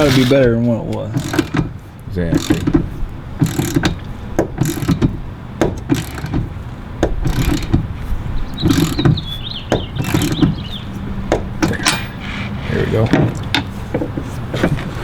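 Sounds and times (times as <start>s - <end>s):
ratchet clicks: 0.0s - 7.9s, 8.5s - 10.8s
metal knocks: 0.0s - 15.0s.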